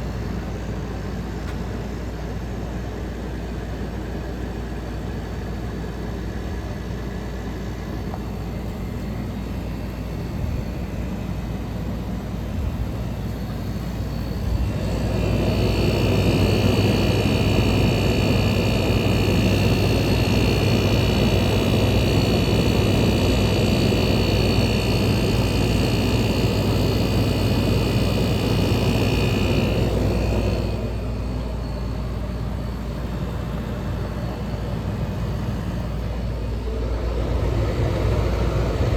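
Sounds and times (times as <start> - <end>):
air conditioner hum: 0.0 - 38.9
rushing air with high whine: 12.6 - 38.9.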